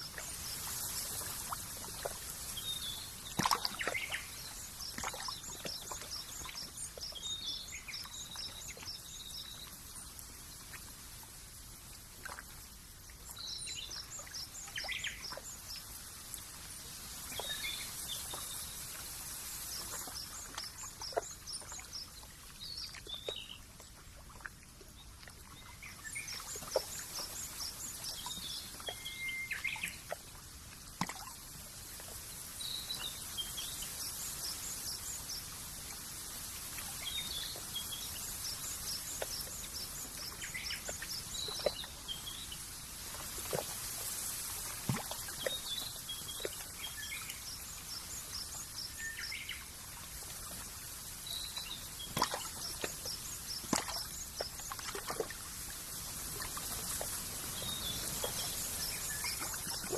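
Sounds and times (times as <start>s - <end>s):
small birds chirping: 0.0s - 10.2s, 56.9s - 59.9s
sharp drip-like ticks: 0.0s - 11.0s, 11.8s - 59.9s
trickling water: 0.0s - 59.9s.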